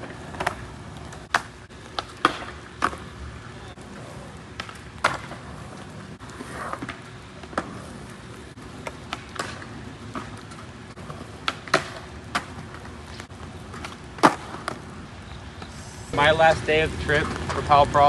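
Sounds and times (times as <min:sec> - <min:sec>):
skateboard clacks and knocks: 0:00.0 - 0:03.1, 0:04.5 - 0:05.9, 0:08.8 - 0:14.8
skateboard rolling on wet pavement: 0:00.0 - 0:18.0.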